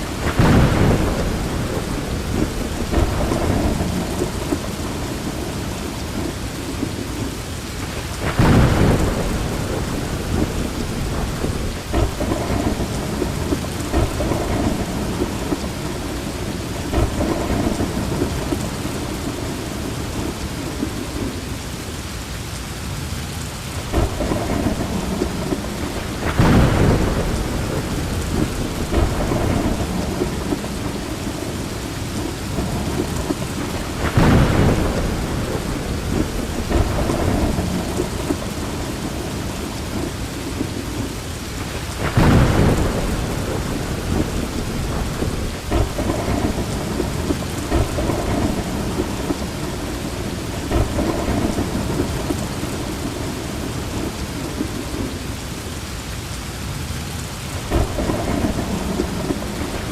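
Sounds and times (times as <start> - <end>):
loud thunderclaps: 0.0 - 21.5, 23.8 - 55.2, 57.6 - 59.9
low thunder rumbling: 0.0 - 21.8, 23.6 - 55.8, 57.4 - 59.9
heavy rain falling: 0.0 - 59.9.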